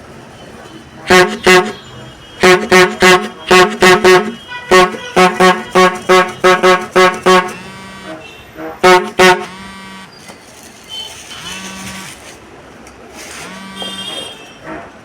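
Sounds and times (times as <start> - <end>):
rubber-bulb squeeze horn honking: 1.0 - 10.1, 10.8 - 12.2, 13.3 - 14.7.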